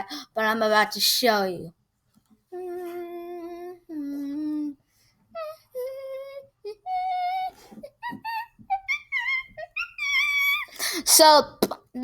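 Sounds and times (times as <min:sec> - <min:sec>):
young person singing wordless notes: 0:02.6 - 0:04.8.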